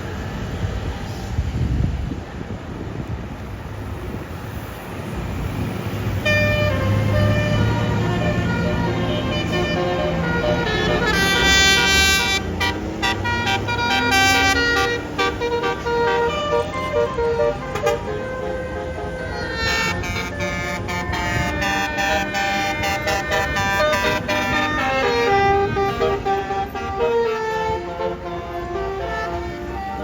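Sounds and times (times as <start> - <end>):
passing road traffic: 0.0 - 30.0
musical bus horn playing: 6.2 - 30.0.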